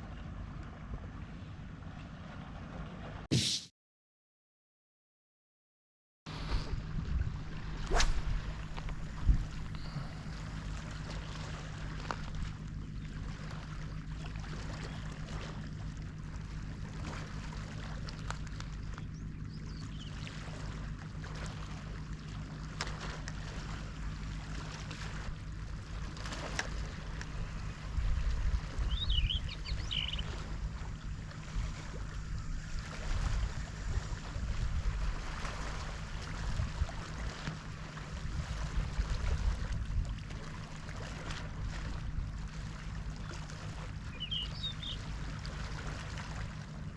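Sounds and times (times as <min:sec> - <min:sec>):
low hum: 0:06.3 - 0:46.9
water sloshing: 0:06.8 - 0:46.9
bird chirps: 0:28.9 - 0:30.3, 0:44.1 - 0:45.0.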